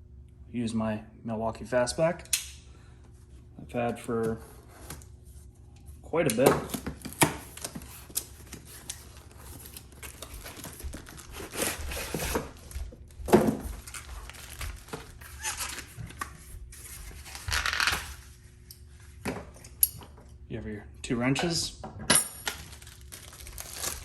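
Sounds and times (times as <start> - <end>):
packaging being cut and torn: 6.7 - 12.7, 22.4 - 24.0.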